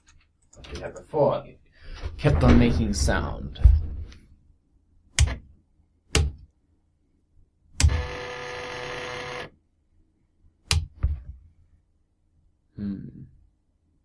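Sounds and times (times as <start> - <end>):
stepper motor buzzing: 7.8 - 9.5.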